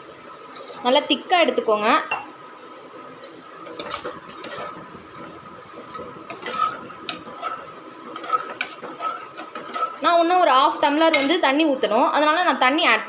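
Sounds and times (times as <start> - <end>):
utensils clicking and scraping in pot: 3.2 - 10.3.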